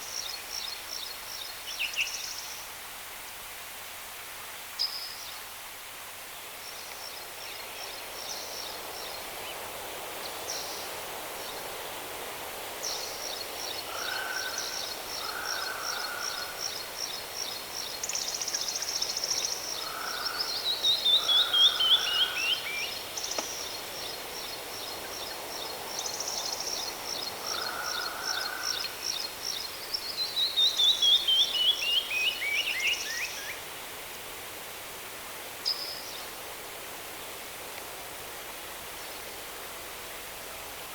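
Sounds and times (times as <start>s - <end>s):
low bird calls: 13.8s - 16.8s, 19.8s - 29.0s.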